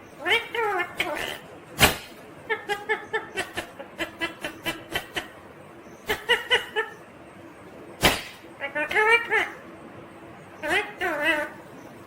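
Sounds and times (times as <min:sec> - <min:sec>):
parakeet chattering: 0:00.0 - 0:01.5, 0:02.4 - 0:07.1, 0:08.0 - 0:09.6, 0:10.6 - 0:11.7.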